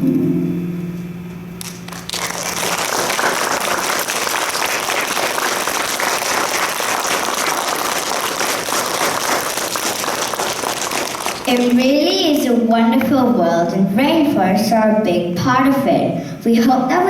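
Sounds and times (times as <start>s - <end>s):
audience applause: 1.6s - 12.0s.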